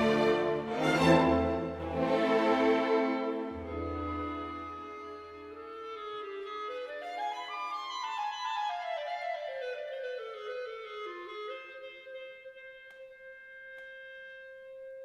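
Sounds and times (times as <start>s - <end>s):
descending instrumental melody: 0.0s - 5.7s.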